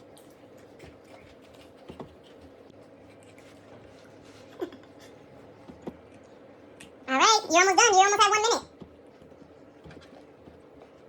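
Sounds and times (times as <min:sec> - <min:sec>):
child chewing: 0:00.0 - 0:07.0.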